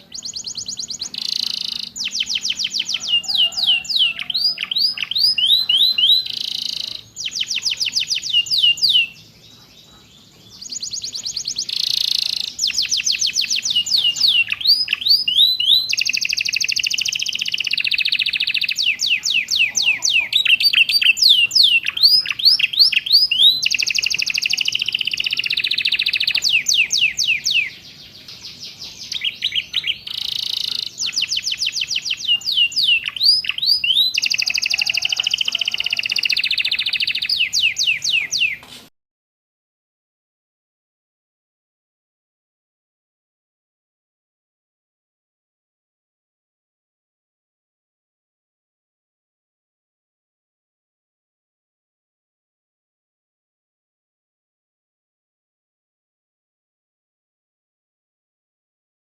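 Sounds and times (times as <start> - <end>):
canary singing: 0.0 - 38.8.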